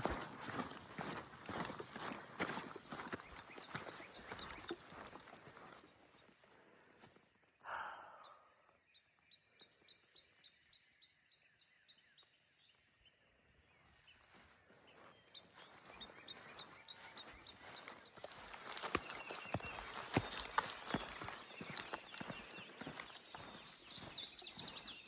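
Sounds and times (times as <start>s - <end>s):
bird chirping: 0.0s - 6.3s, 8.1s - 25.0s
footsteps through grass: 0.0s - 7.2s, 14.2s - 25.0s.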